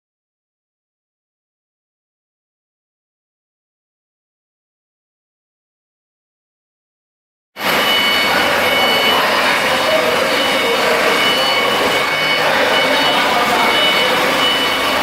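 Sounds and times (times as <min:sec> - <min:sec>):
diesel generator running: 0:07.6 - 0:15.0
faint high whines: 0:07.6 - 0:15.0.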